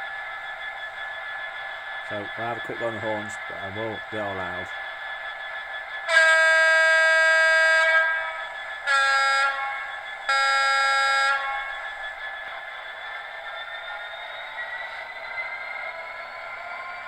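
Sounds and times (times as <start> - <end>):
diesel locomotive horn blasts: 6.1 - 11.8.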